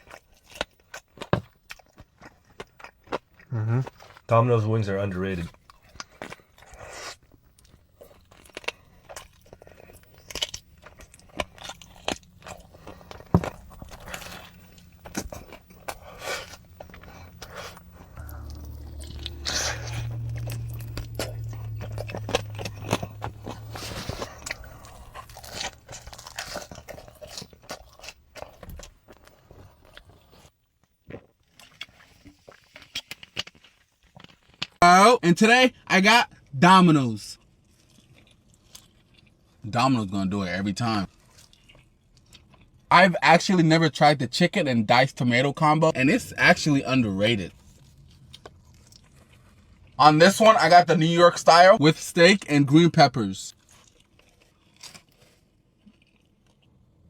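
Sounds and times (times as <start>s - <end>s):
crunchy bites and chewing: 0.0s - 34.8s, 37.4s - 39.6s, 41.0s - 43.5s, 46.1s - 51.4s, 52.3s - 57.0s
low steady hum: 7.4s - 28.9s.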